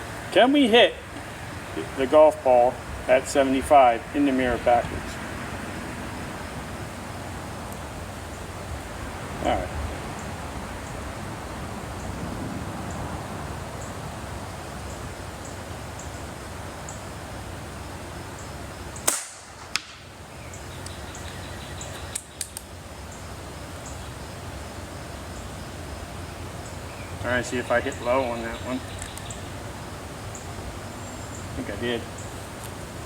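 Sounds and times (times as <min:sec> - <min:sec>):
low outdoor noise: 0:00.0 - 0:33.0
airgun shot crack: 0:19.0 - 0:20.0.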